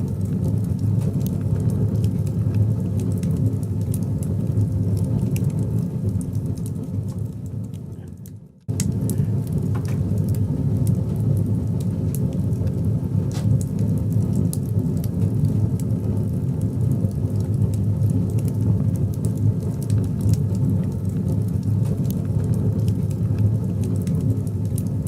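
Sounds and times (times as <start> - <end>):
fire crackling and snapping: 0.0 - 25.0
fire roaring in stove: 0.0 - 25.0.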